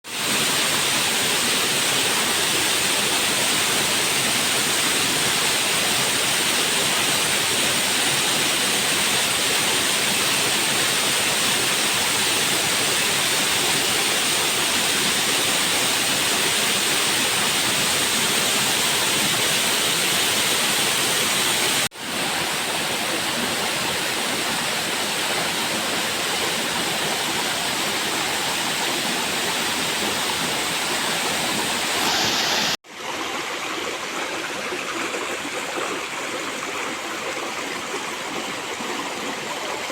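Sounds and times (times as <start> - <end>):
waterfall rushing: 13.8 - 32.8.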